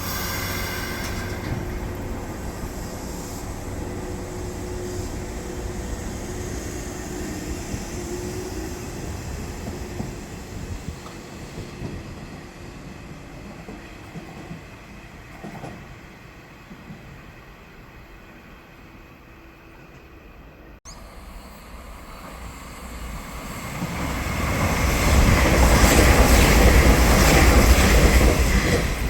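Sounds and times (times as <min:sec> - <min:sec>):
rail joint clicks: 0:00.0 - 0:04.2, 0:09.5 - 0:12.5, 0:13.1 - 0:16.0, 0:19.7 - 0:20.3
train wheels rumbling on rails: 0:00.0 - 0:18.4, 0:21.0 - 0:29.0.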